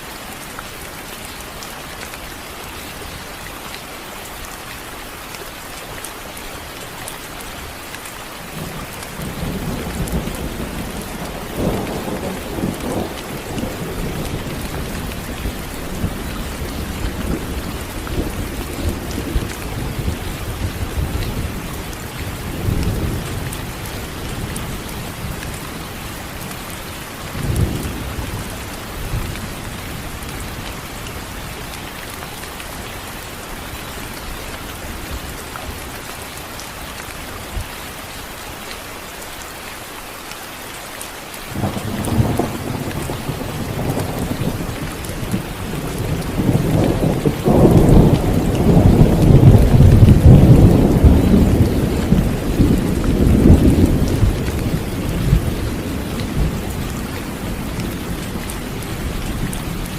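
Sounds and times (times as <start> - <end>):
heavy rain: 0.0 - 59.9
thunder rumbling: 41.6 - 59.9.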